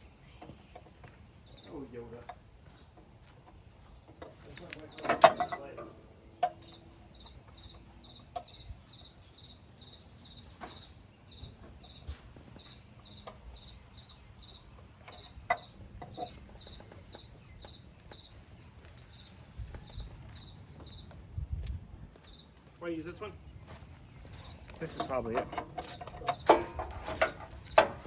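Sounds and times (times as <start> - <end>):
cricket chirping: 1.4 - 1.9, 6.4 - 21.1, 22.2 - 22.6.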